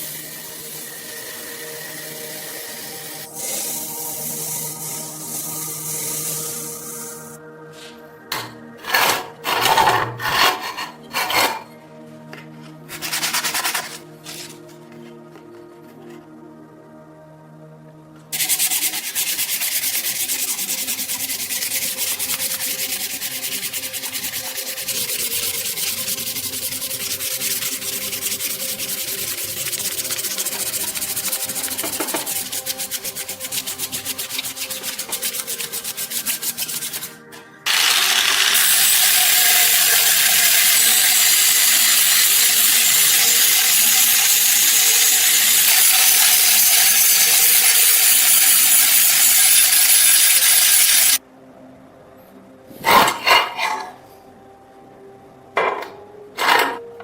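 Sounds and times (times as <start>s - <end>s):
sanding rusty metal: 12.9s - 14.0s, 18.4s - 51.2s.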